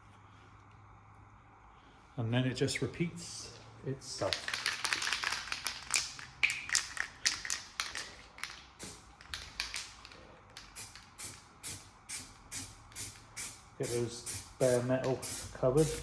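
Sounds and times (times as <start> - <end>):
aerosol spray hissing bursts: 8.8 - 9.1, 10.7 - 16.0.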